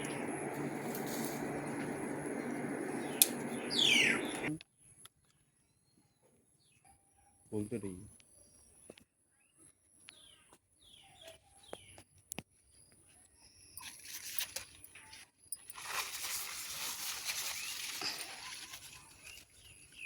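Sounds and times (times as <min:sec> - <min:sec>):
rustling hiss: 0:00.0 - 0:04.5
birds chirping: 0:00.0 - 0:04.6.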